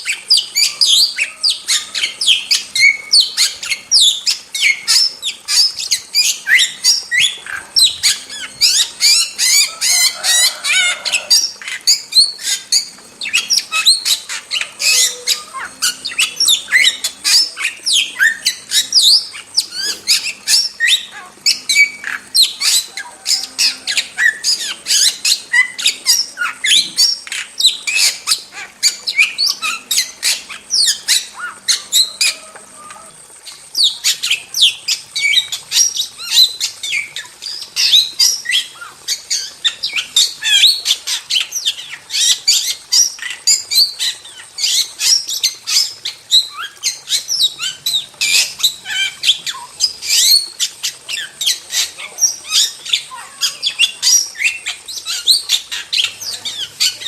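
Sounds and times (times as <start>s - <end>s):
starling chirps and whistles: 0.0s - 57.0s.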